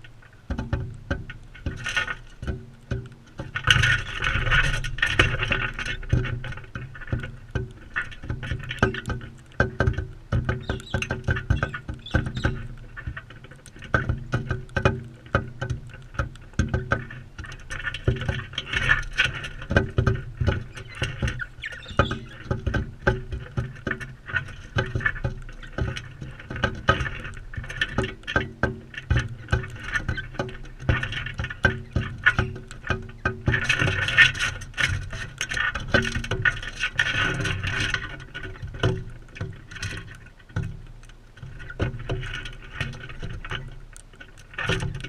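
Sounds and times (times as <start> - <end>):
beaks pecking and cracking seed: 10.4 - 13.7, 20.7 - 22.8
soft bird chatter: 10.5 - 12.7, 20.7 - 22.5.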